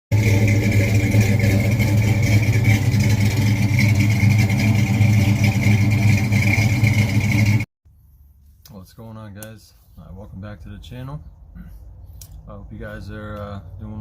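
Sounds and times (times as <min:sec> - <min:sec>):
car engine running: 0:00.1 - 0:07.7.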